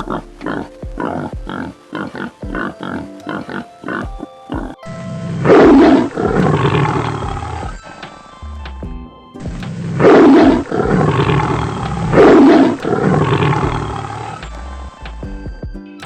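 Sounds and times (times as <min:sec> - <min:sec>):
big cat roaring: 0:00.0 - 0:07.8, 0:09.9 - 0:15.0
pig grunting: 0:00.0 - 0:08.0, 0:09.9 - 0:15.0
background music: 0:00.0 - 0:16.0.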